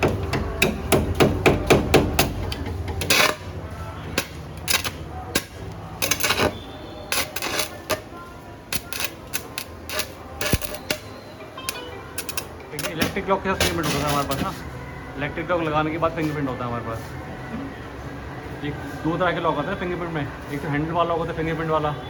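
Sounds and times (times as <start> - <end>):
hammer striking steel: 0.0 - 3.5.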